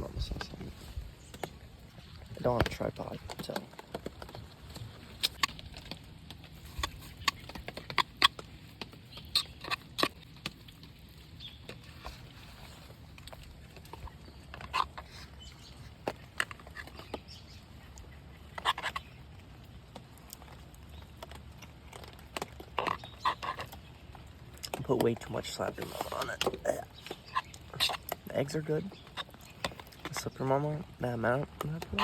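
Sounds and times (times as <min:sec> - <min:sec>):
close-up chewing: 0:00.0 - 0:32.0.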